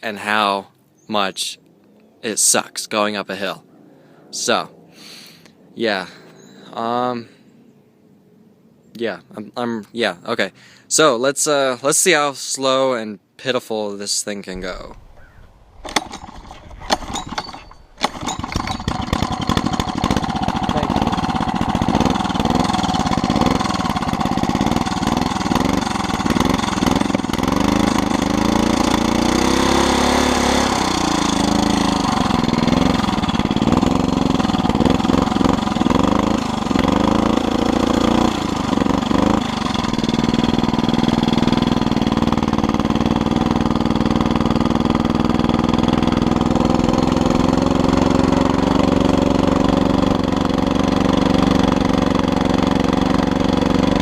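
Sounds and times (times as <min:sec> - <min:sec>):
small motorized bike engine running: 0:15.2 - 0:54.0.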